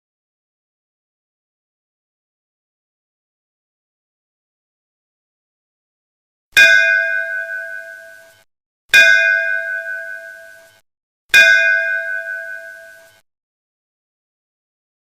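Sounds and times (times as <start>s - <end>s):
metal bell struck: 6.6s - 8.4s, 9.0s - 10.8s, 11.4s - 13.2s.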